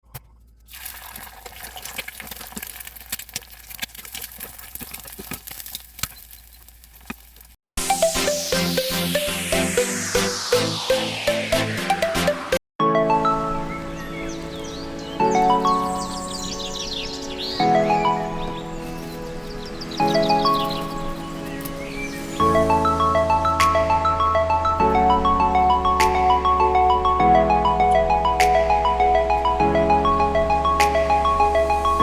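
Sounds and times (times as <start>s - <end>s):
oil popping: 0.1s - 7.6s
gentle background music: 12.8s - 32.0s
birds chirping rapidly: 13.3s - 24.0s.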